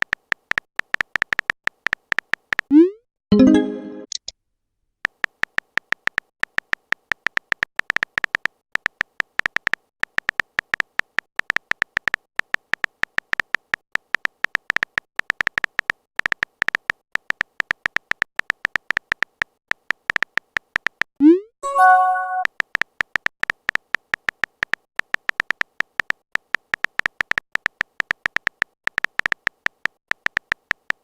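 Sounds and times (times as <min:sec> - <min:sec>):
phone keyboard typing clicks: 0:21.9 - 0:31.0.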